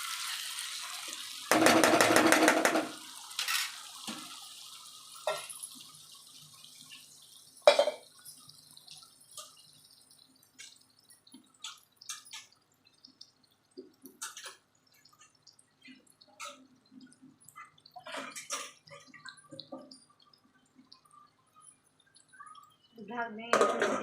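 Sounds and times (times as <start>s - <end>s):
vegetables sizzling in oil: 0.0s - 24.0s
oil popping: 5.2s - 24.0s.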